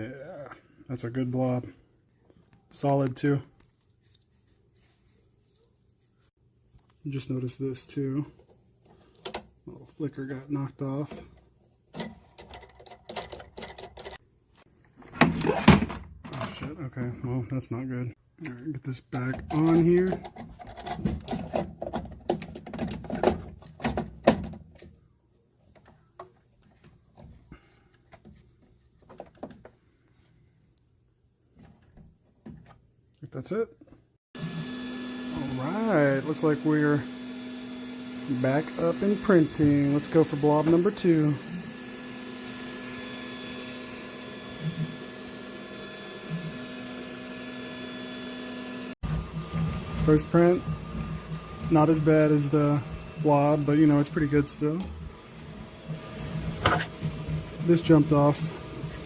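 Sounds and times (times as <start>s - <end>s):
clicks and knocks of handled parts: 11.4s - 14.2s
printer motor whine: 34.4s - 59.0s.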